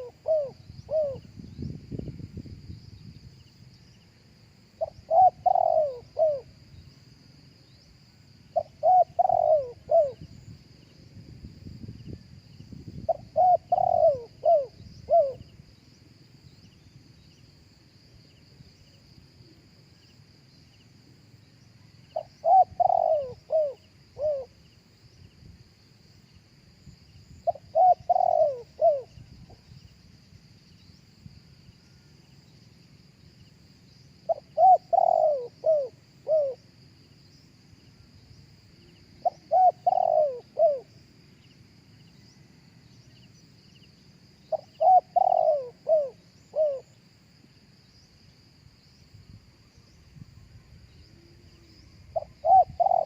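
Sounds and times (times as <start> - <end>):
dove cooing: 0.0 - 1.3, 4.8 - 6.6, 8.5 - 10.3, 13.1 - 15.4, 22.1 - 24.6, 27.4 - 29.7, 34.3 - 36.6, 39.2 - 41.0, 44.5 - 47.0, 51.3 - 53.0
faint high insect hum: 0.0 - 53.0.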